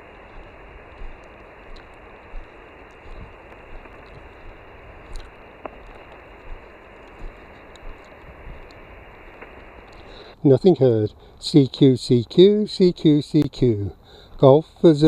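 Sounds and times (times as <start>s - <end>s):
radio static hiss: 0.0s - 15.0s
soft footstep thumps: 0.3s - 8.7s.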